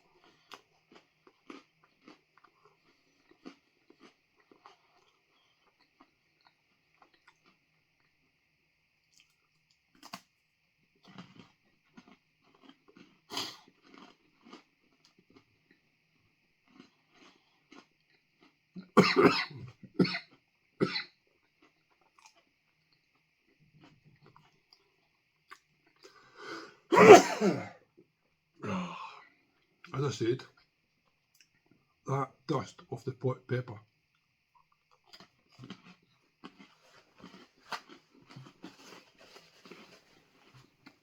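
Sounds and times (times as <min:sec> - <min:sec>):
man chewing crunchy food: 0:00.0 - 0:27.7, 0:34.1 - 0:41.0
man coughing: 0:19.0 - 0:20.2, 0:26.9 - 0:27.8.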